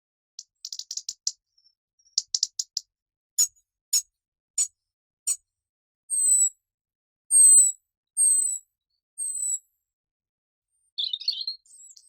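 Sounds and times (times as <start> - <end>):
robin ticking calls: 0.4 - 1.4, 2.0 - 4.0.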